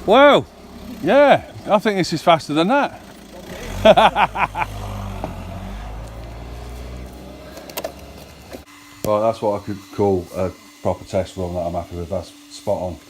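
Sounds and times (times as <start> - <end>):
electric rc car motor whine: 3.0 - 13.0.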